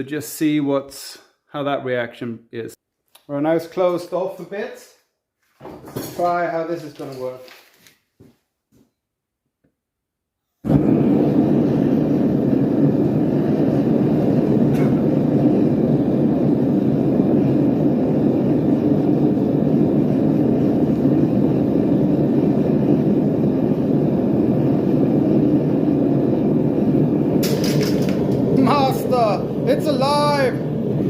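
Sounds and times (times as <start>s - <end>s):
gas burners igniting: 5.7s - 7.8s, 10.6s - 31.0s
burners rushing roar: 26.4s - 31.0s.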